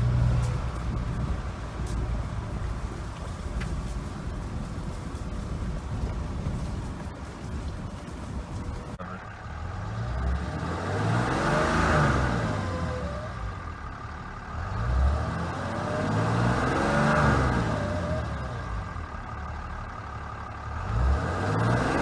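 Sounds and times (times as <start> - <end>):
diesel engine revving: 0.0 - 22.0.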